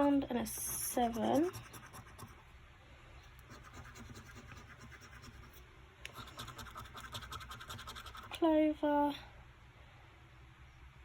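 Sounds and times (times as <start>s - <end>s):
scratch card being scratched: 0.5s - 2.4s, 3.5s - 8.4s.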